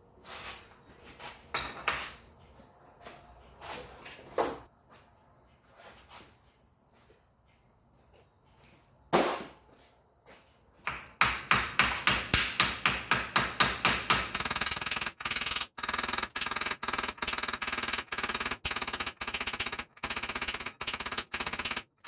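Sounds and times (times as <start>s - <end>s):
hammer on metal: 10.9s - 14.5s.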